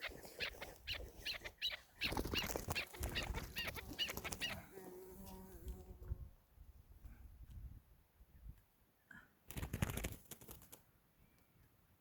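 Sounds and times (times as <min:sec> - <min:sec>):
wings flapping: 0:00.0 - 0:04.6, 0:09.5 - 0:10.8.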